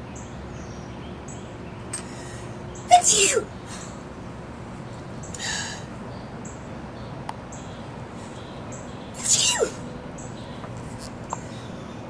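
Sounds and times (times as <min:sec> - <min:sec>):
woman sneezing: 0:02.9 - 0:03.9, 0:09.2 - 0:09.8.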